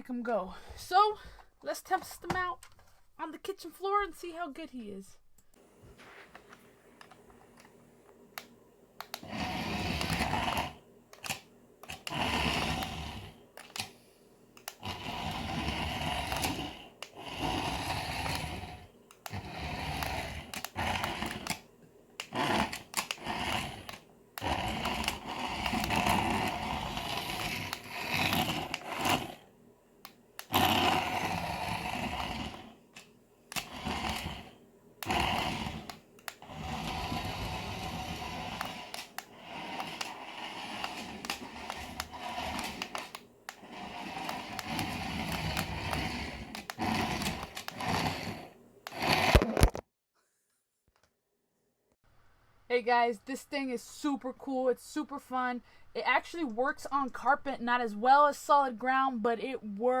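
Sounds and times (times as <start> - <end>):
toy car motor whirring: 9.0 - 13.9, 14.6 - 21.6, 22.2 - 29.5, 30.4 - 49.8.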